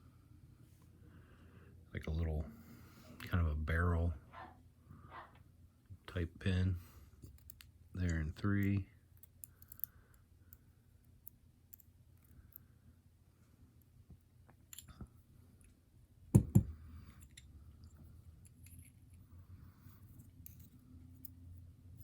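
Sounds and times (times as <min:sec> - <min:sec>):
sharp knocks: 0:16.4 - 0:16.8.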